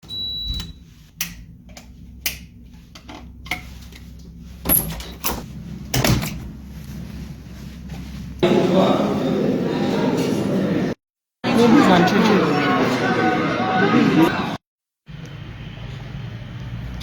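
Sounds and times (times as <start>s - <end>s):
steady low hum: 0.6s - 9.5s.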